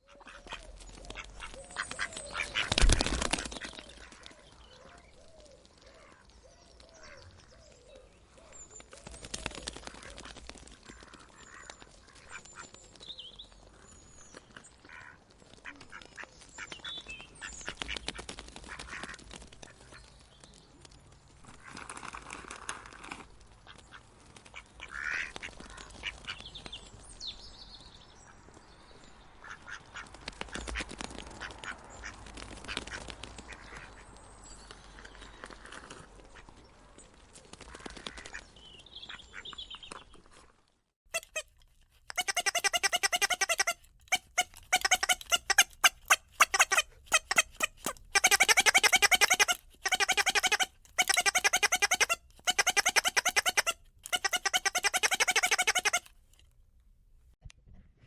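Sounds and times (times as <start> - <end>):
ducks quacking: 0.0 - 5.0, 41.2 - 41.4, 42.1 - 56.1.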